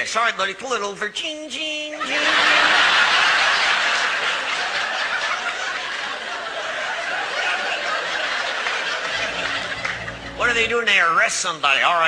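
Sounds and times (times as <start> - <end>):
audience laughing: 2.0 - 10.8.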